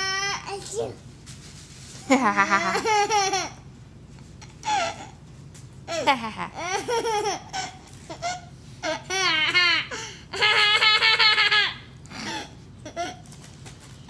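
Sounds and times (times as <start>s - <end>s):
baby laughing: 2.3s - 3.6s, 5.9s - 13.2s.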